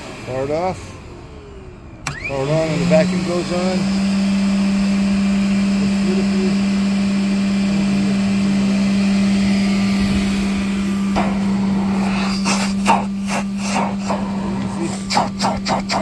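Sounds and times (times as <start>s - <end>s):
vacuum machine humming: 0.0s - 16.0s.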